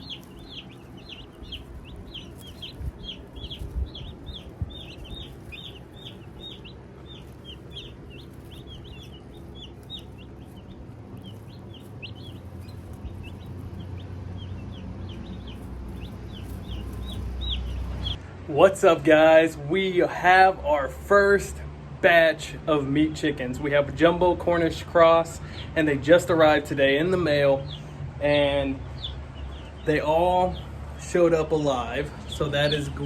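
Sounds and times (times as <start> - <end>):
chicks peeping: 0.0 - 18.2, 23.0 - 33.0
low rumble: 0.0 - 18.5.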